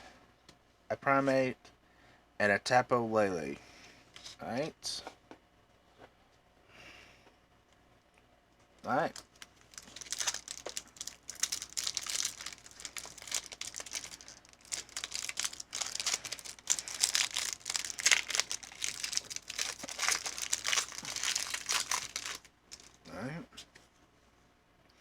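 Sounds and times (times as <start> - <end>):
foil wrapper crinkling and tearing: 8.9 - 23.1.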